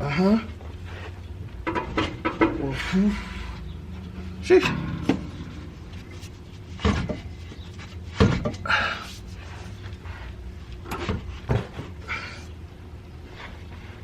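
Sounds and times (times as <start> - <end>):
exhaust pipe clunking against car: 1.6 - 2.6, 4.1 - 9.0.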